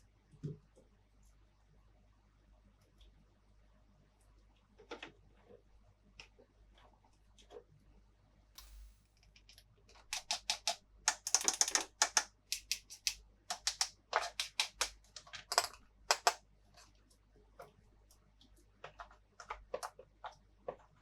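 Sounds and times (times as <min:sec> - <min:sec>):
plastic toy pieces clicking: 0:10.0 - 0:16.4.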